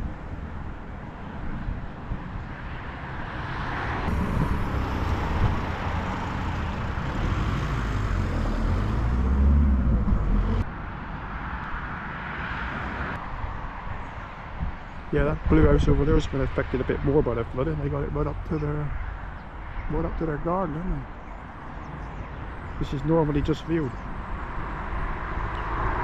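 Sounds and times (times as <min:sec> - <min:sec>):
road traffic passing: 0:00.0 - 0:26.0
wind buffeting microphone: 0:03.2 - 0:10.7, 0:13.2 - 0:26.0.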